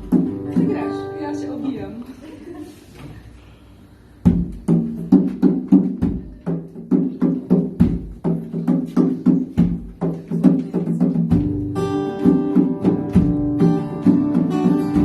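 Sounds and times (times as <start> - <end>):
acoustic guitar strumming: 0.0 - 1.9, 11.2 - 15.0.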